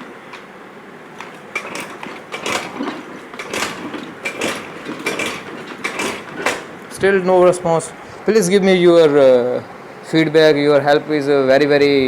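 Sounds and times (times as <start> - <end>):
scooter engine cranking: 0.0 - 7.9.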